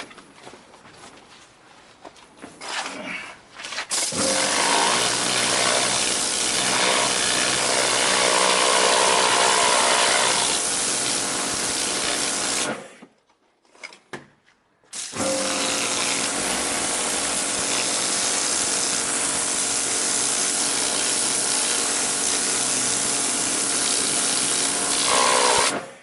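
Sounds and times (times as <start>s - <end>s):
pump motor hum: 4.1s - 12.9s, 15.1s - 26.0s.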